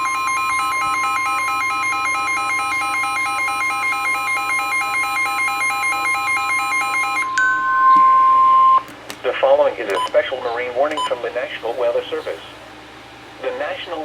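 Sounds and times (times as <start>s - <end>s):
steady warning alarm tone: 0.0s - 8.8s
two-pitch switching alarm: 0.0s - 8.8s.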